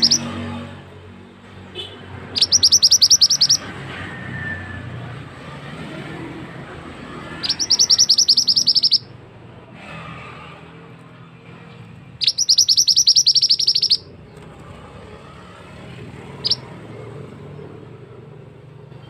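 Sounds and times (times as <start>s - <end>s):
bird trilling high sharp notes: 0.0s - 0.4s, 2.3s - 3.6s, 7.3s - 9.1s, 12.2s - 14.1s, 16.4s - 16.6s.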